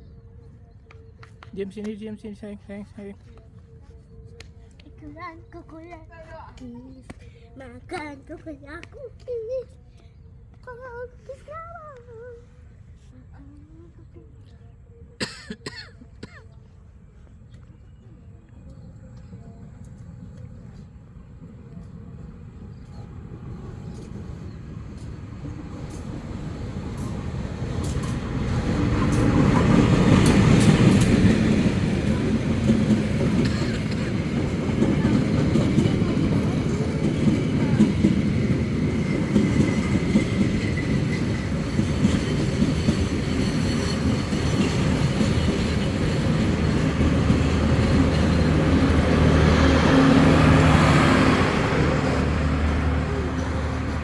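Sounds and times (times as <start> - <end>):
vehicle engine rumble: 42.8 - 54.0.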